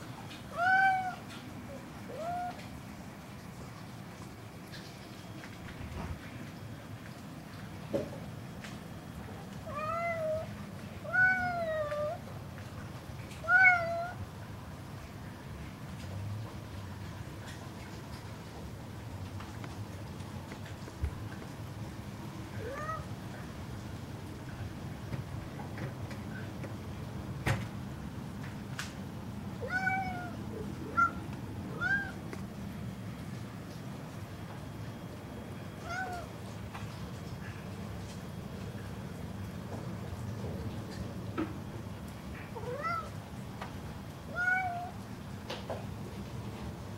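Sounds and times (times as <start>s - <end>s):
cat meowing: 0.5s - 1.3s, 2.1s - 2.6s, 9.6s - 12.2s, 13.4s - 14.2s, 22.5s - 23.2s, 29.6s - 32.2s, 35.8s - 36.3s, 42.6s - 43.2s, 44.3s - 45.0s.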